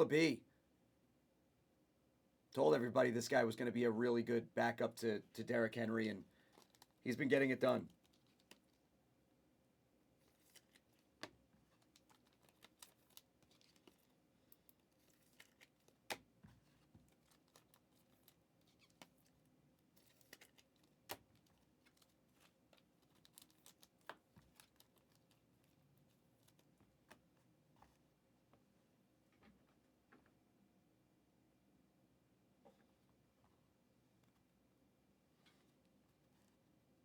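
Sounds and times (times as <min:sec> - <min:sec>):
trading cards shuffled by hand: 0:10.2 - 0:25.8.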